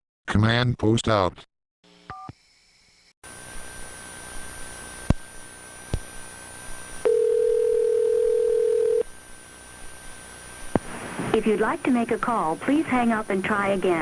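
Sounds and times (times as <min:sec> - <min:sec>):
faint telephone line hiss: 0:07.0 - 0:09.0
steady telephone tone: 0:07.0 - 0:09.1.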